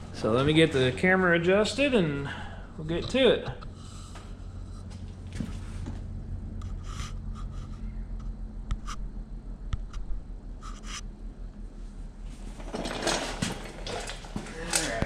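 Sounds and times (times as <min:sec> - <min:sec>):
steady low hum: 0:00.0 - 0:15.0
rubbing and scraping handling noises: 0:02.9 - 0:08.0, 0:10.6 - 0:11.0, 0:12.3 - 0:15.0.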